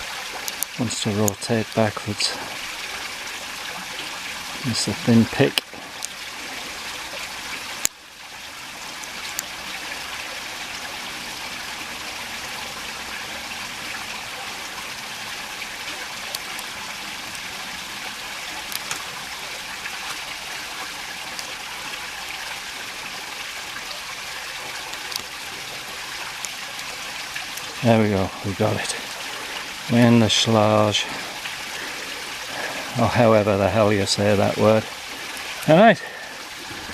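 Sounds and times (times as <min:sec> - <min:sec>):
creek water trickling: 0:00.0 - 0:36.9
faint sharp clicks: 0:18.7 - 0:19.1.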